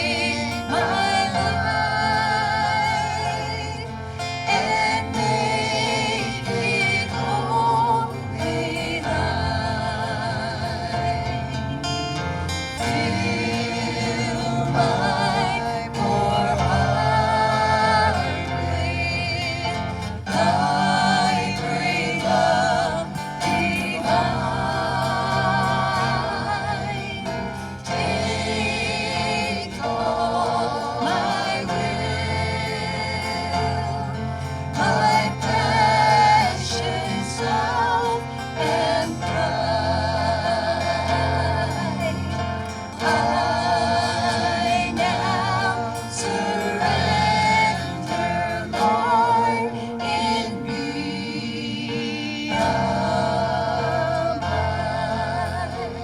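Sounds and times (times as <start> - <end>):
instrumental accompaniment: 0.0 - 56.0
several voices singing gospel: 0.0 - 56.0.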